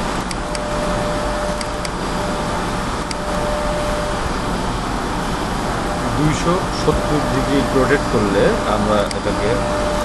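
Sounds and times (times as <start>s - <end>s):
fan whirring hum: 0.0s - 10.0s
computer mouse clicks: 1.6s - 2.0s.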